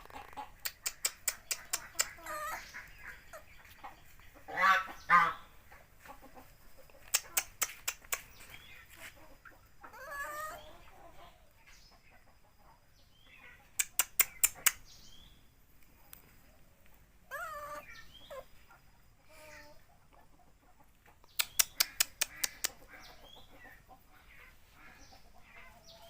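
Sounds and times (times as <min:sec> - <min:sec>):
chickens clucking: 0:00.0 - 0:26.0
sharp clicks: 0:00.6 - 0:02.2, 0:07.1 - 0:08.4, 0:13.8 - 0:14.9, 0:21.2 - 0:22.8
loud chicken calls: 0:01.3 - 0:03.5, 0:04.3 - 0:05.6.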